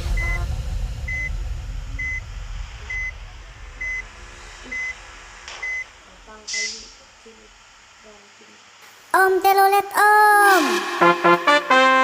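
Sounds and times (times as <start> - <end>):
short high electronic beep: 0.0 - 1.4, 2.0 - 2.2, 2.9 - 3.2, 3.8 - 4.0, 4.7 - 5.0, 5.6 - 5.8
large vehicle rumble: 0.0 - 6.4
bus musical horn: 10.9 - 12.0.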